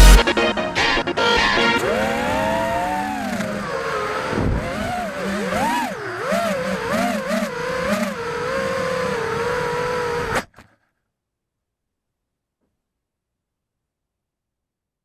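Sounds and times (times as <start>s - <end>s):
quadcopter motors whining: 0.0s - 10.7s.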